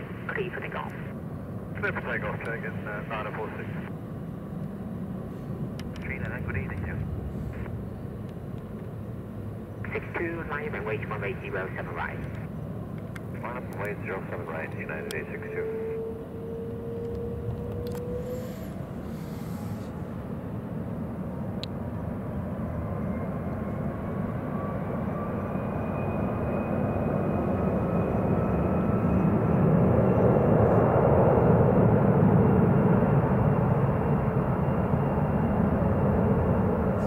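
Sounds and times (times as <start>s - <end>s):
jet engines roaring at takeoff: 0.0s - 37.0s
faint rising whine: 13.3s - 21.1s.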